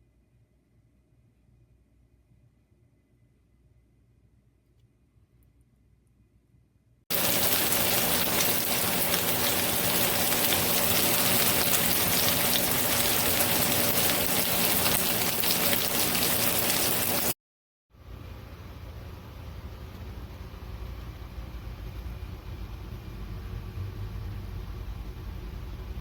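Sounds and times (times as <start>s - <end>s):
loud crackling hiss: 7.1s - 17.4s.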